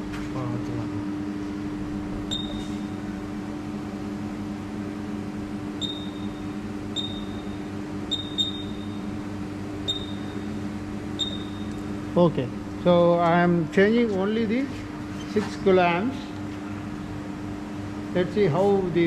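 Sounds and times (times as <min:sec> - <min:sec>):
steady electrical hum: 0:00.0 - 0:19.0
short high-pitched beeps: 0:02.3 - 0:02.9, 0:05.8 - 0:06.4, 0:07.0 - 0:09.0, 0:09.9 - 0:10.5, 0:11.2 - 0:11.8.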